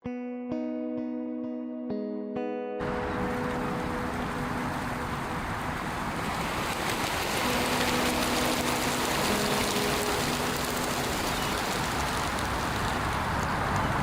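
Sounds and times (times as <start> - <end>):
lake water washing: 2.9 - 14.0.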